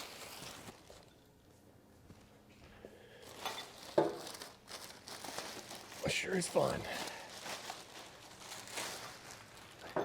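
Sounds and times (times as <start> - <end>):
plastic crinkling: 0.0 - 1.2, 3.1 - 10.0
plastic wrap rustling: 0.0 - 1.3, 3.1 - 10.0.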